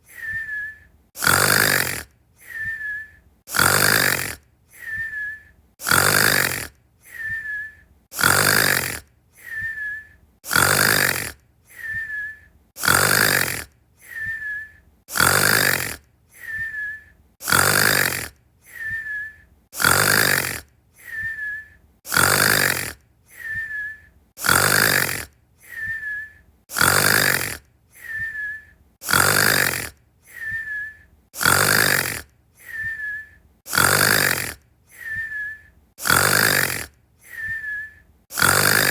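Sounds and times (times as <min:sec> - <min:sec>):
breath out with high whistle: 0:00.0 - 0:00.9, 0:02.4 - 0:03.2, 0:04.7 - 0:05.5, 0:07.0 - 0:07.8, 0:09.4 - 0:10.2, 0:11.7 - 0:12.5, 0:14.0 - 0:14.8, 0:16.3 - 0:17.2, 0:18.6 - 0:19.5, 0:21.0 - 0:21.8, 0:23.3 - 0:24.1, 0:25.6 - 0:26.4, 0:28.0 - 0:28.8, 0:30.2 - 0:31.1, 0:32.6 - 0:33.4, 0:34.9 - 0:35.7, 0:37.2 - 0:38.1
person snoring: 0:01.2 - 0:02.7, 0:03.5 - 0:05.0, 0:05.8 - 0:07.4, 0:08.2 - 0:09.7, 0:10.5 - 0:12.0, 0:12.8 - 0:14.3, 0:15.1 - 0:16.6, 0:17.4 - 0:19.0, 0:19.8 - 0:21.3, 0:22.1 - 0:23.6, 0:24.4 - 0:25.9, 0:26.7 - 0:28.4, 0:29.0 - 0:30.7, 0:31.4 - 0:35.4, 0:36.0 - 0:37.5, 0:38.3 - 0:38.9.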